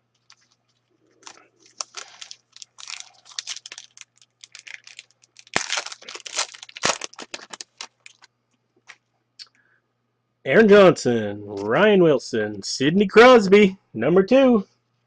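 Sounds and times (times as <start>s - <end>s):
foil wrapper tearing and crinkling: 1.2s - 8.3s.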